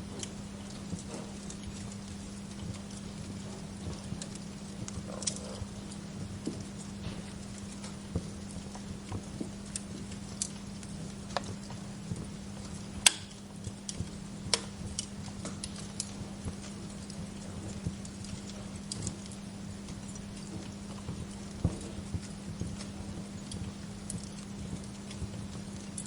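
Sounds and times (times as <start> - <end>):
wood fire crackling: 0.0 - 26.0.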